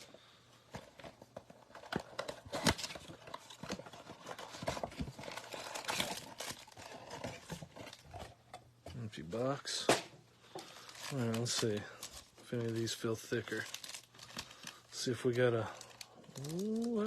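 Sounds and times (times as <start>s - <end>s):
crinkling rustles: 0.1s - 9.4s, 10.4s - 17.0s.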